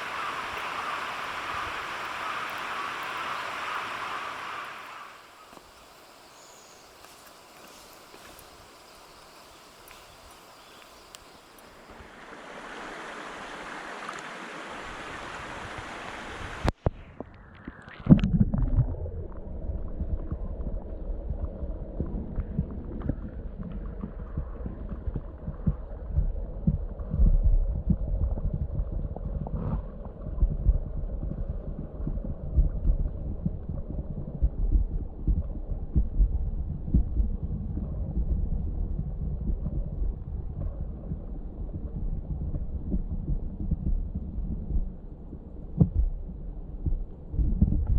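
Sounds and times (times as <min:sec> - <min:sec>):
wind buffeting microphone: 0:00.0 - 0:12.0, 0:14.8 - 0:47.9
stream rushing over rocks: 0:00.0 - 0:16.8.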